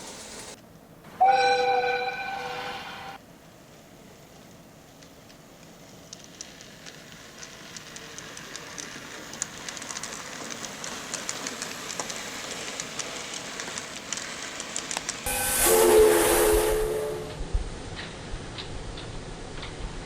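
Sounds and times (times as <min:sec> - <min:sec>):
train horn: 0:01.2 - 0:03.2, 0:15.3 - 0:17.6
model train running on track: 0:01.2 - 0:20.0.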